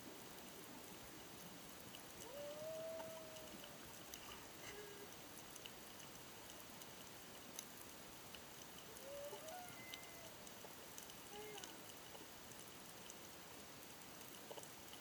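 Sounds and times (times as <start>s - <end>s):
faint hiss: 0.0s - 15.0s
humpback whale song underwater: 2.2s - 5.2s, 8.9s - 11.9s.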